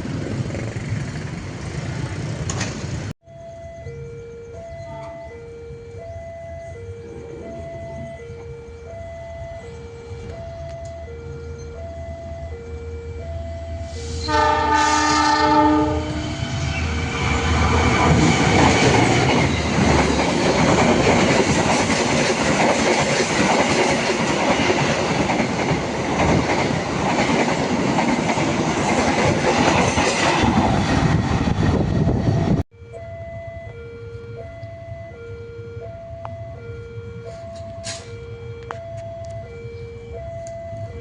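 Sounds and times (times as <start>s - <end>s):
train wheels on rails: 0.0s - 3.1s, 13.8s - 32.6s, 37.3s - 39.4s
two-tone crossing alarm: 3.2s - 30.4s, 31.0s - 41.0s
train horn: 13.8s - 16.8s.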